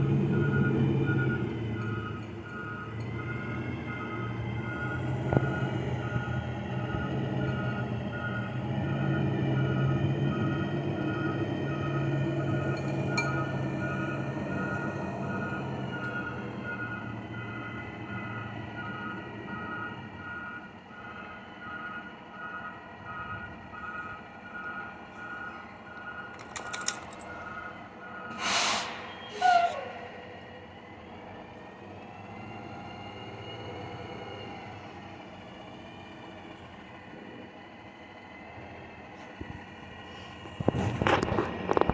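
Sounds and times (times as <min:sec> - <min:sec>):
loud short noises: 0:28.3 - 0:30.4.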